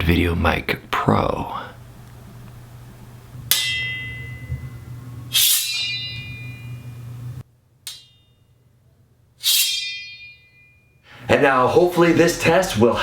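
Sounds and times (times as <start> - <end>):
low hum: 1.6 - 11.0
metal object struck ringing: 3.5 - 7.2, 7.9 - 8.6, 9.4 - 11.0.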